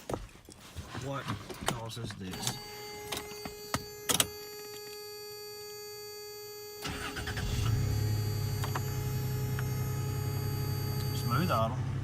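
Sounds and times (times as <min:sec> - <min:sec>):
engine starting and idling: 0:06.8 - 0:11.5.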